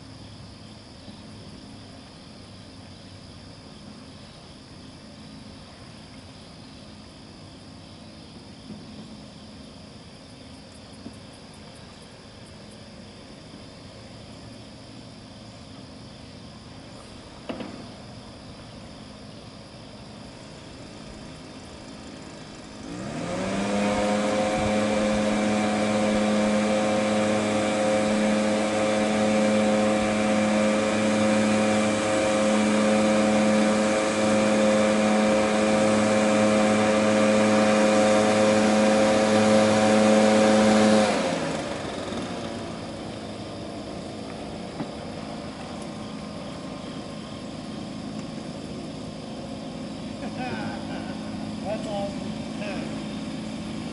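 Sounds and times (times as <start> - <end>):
leaf blower engine revving: 11.9 - 53.9.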